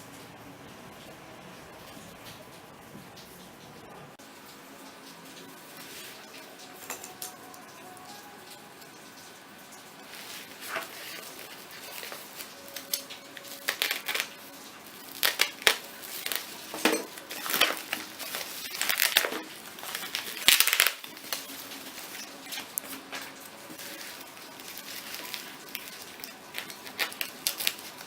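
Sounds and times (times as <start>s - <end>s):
packaging crinkling: 9.9s - 28.0s.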